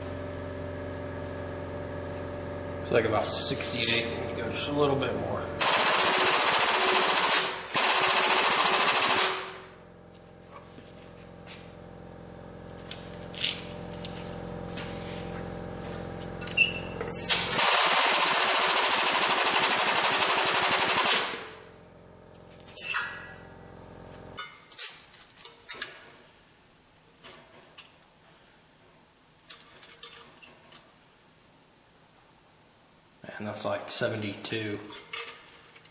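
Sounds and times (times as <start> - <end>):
machine hum: 0.0 - 24.4.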